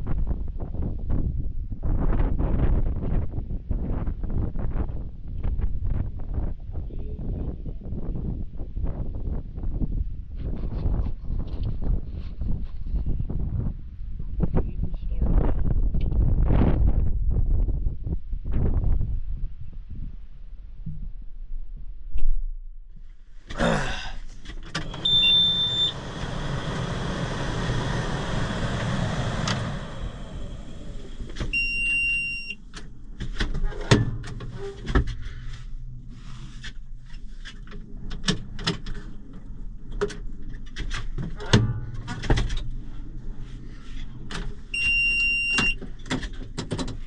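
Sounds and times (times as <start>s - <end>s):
electronic warning beep: 25.0s - 26.0s, 31.5s - 32.6s, 44.8s - 45.8s
low rumble: 25.0s - 45.8s
clicks and knocks in tractor cab: 45.5s - 47.0s.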